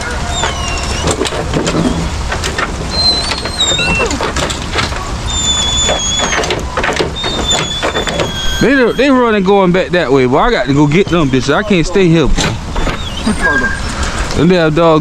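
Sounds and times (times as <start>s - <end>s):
thin high squeals: 0.0s - 2.2s, 2.9s - 4.3s, 4.9s - 9.4s, 10.5s - 12.0s, 12.7s - 14.2s
rattles and knocks: 0.0s - 8.7s, 12.3s - 13.2s
truck engine and road rumble: 0.0s - 15.0s.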